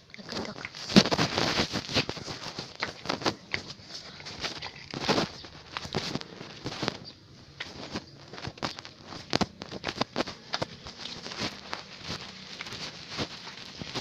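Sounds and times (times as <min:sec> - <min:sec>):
footsteps in sandals: 0:00.0 - 0:14.0.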